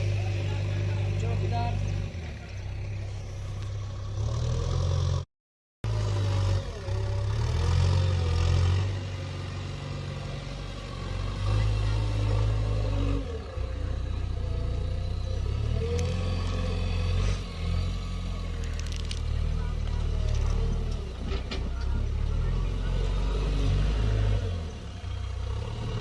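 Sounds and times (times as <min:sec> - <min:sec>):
heavy diesel engine running: 0:00.0 - 0:05.2, 0:05.9 - 0:26.0.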